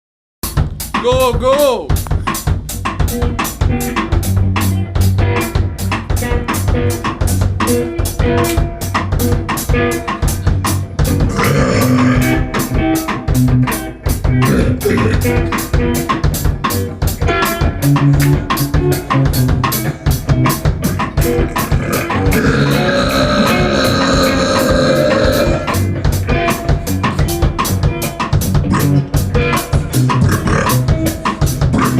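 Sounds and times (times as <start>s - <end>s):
band music: 0.4s - 31.9s
drum kit steady beat: 0.4s - 31.9s.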